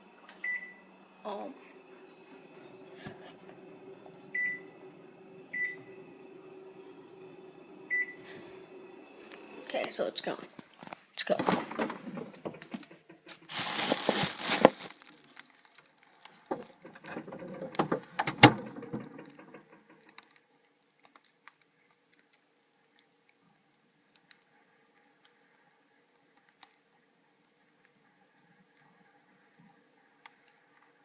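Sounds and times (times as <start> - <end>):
faint steady hum: 0.0 - 31.0
objects rustling and clattering: 9.2 - 20.4.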